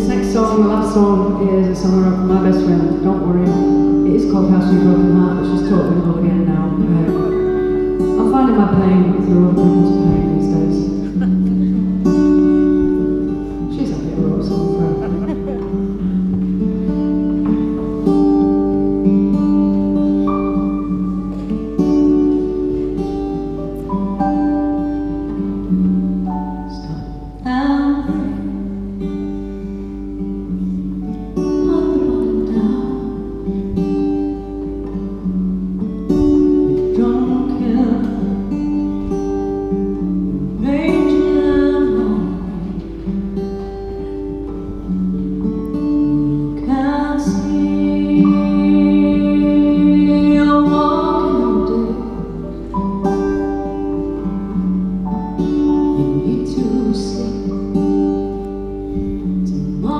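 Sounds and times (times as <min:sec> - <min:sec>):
strummed acoustic guitar: 0:00.0 - 0:59.9
person singing: 0:46.2 - 0:54.0, 0:55.5 - 0:58.0.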